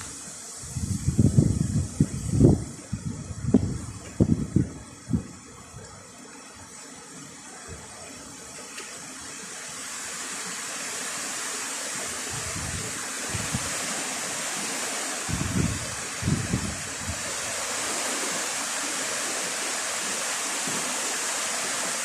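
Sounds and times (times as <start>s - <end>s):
heavy rain pouring: 0.0s - 22.0s
wind buffeting microphone: 0.6s - 6.1s, 12.1s - 18.8s.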